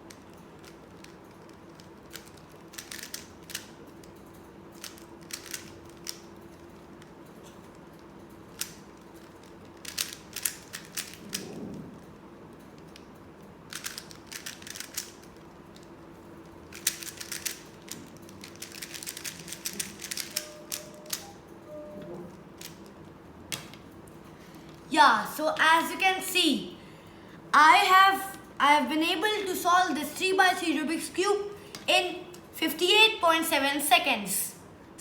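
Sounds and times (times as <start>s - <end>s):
faint steady hum: 0.0s - 35.0s
puzzle cube clicking turns: 0.1s - 3.7s, 4.8s - 6.4s, 8.5s - 11.5s, 13.7s - 15.9s, 16.6s - 21.3s.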